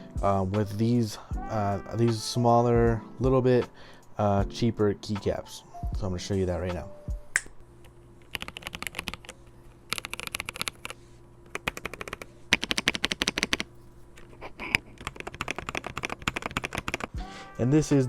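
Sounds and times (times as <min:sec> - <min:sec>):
mechanical keyboard typing: 0:08.3 - 0:13.7, 0:14.7 - 0:17.2.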